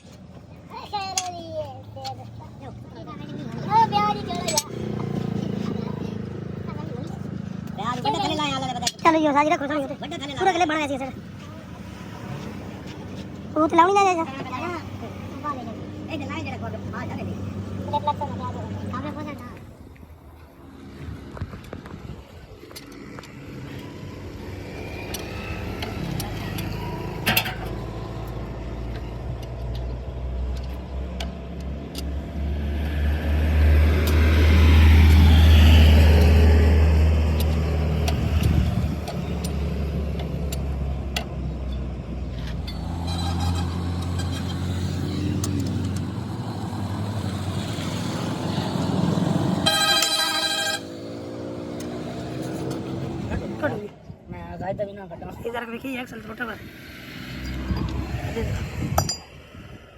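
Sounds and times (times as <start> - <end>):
vehicle engine running: 42.3 - 51.9.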